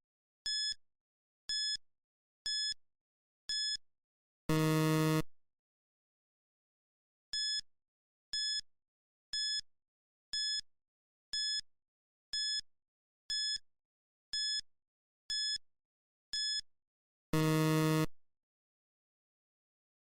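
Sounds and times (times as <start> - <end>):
long low buzzer tone: 4.5 - 5.3, 17.4 - 18.2.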